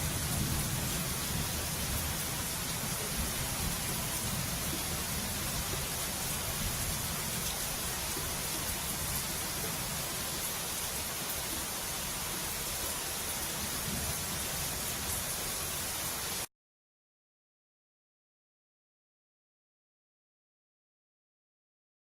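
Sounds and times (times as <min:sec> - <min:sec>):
heavy rain: 0:00.0 - 0:16.5
rushing flood water: 0:00.0 - 0:16.5.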